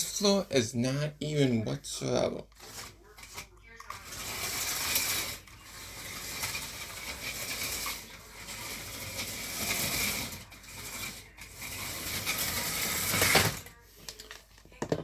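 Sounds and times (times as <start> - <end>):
toy truck motor rattling: 2.6 - 13.7.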